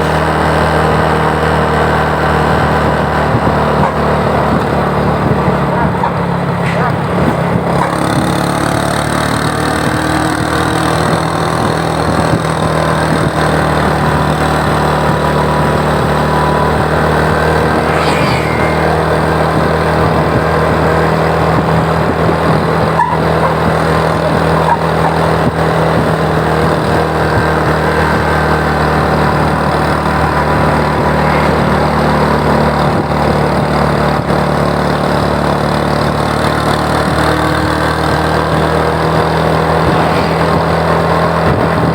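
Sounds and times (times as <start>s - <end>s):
road noise rumble: 0.0s - 41.9s
vehicle engine running: 0.0s - 41.9s
brief high-pitched sound: 17.4s - 19.5s.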